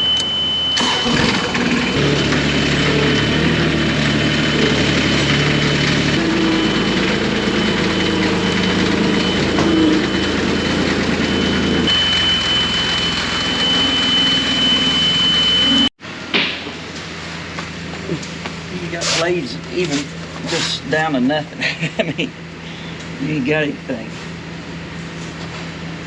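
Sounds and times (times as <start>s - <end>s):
high-pitched whine: 0.0s - 16.3s
tractor engine running: 0.1s - 15.9s.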